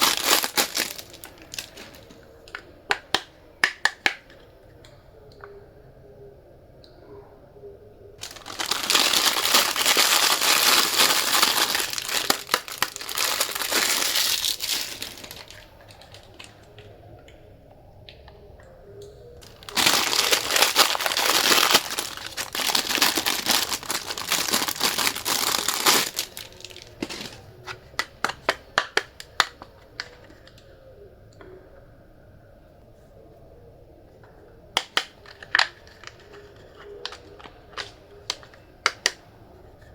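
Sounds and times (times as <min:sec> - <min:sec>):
plastic packaging crinkling: 0:00.0 - 0:02.6, 0:08.2 - 0:16.9, 0:19.4 - 0:30.6, 0:34.8 - 0:39.2.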